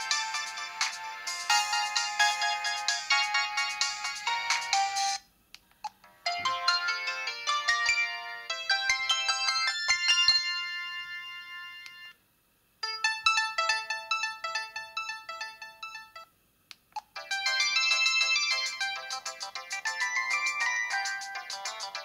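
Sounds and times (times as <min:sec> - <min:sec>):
mobile phone ringtone melodies: 0:00.0 - 0:05.2, 0:06.2 - 0:12.1, 0:17.2 - 0:22.0.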